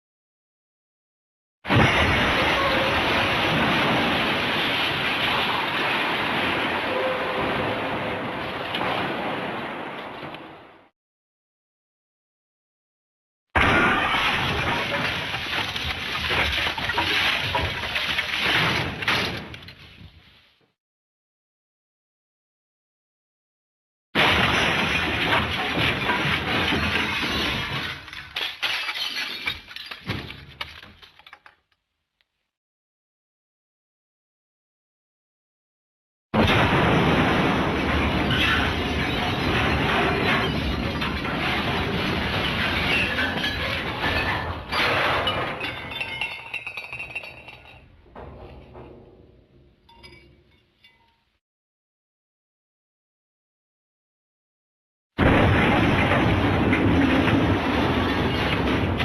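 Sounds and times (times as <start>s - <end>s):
breaking glass: 1.7s - 7.6s, 13.6s - 19.9s, 24.2s - 31.8s, 36.4s - 49.0s, 55.2s - 59.0s
glass and debris crashing: 1.7s - 9.8s, 13.6s - 20.1s, 24.2s - 31.8s, 36.4s - 51.3s, 55.2s - 59.0s.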